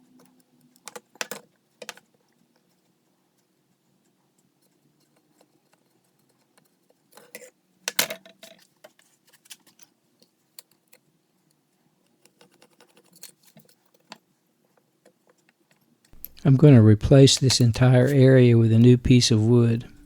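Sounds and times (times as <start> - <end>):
wood and tools clicking and knocking: 15.0 - 16.5.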